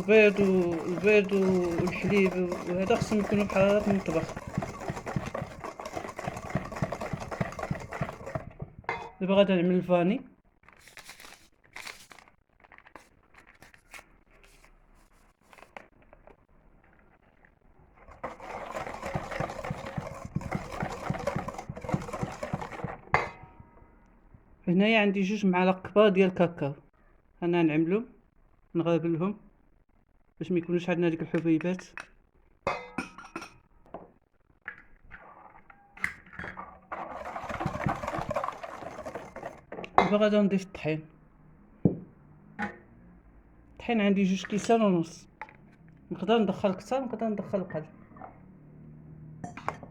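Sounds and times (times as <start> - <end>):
sieve rustling as shaken: 0.0 - 8.6, 18.1 - 23.0, 36.9 - 39.7
electric hand mixer beating batter: 0.0 - 8.8, 18.1 - 23.2, 37.0 - 39.7
sieve clicks: 18.1 - 23.7.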